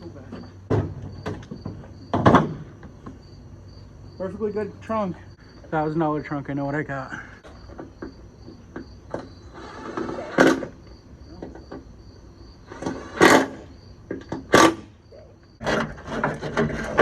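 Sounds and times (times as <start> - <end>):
crickets chirping: 0.0 - 17.0
loud sharp knocks: 0.7 - 2.8
short scrape: 9.4 - 10.7, 12.7 - 13.7.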